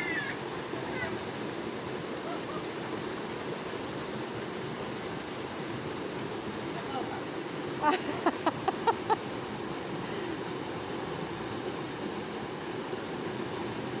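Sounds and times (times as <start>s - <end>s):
stream water flowing: 0.0s - 14.0s.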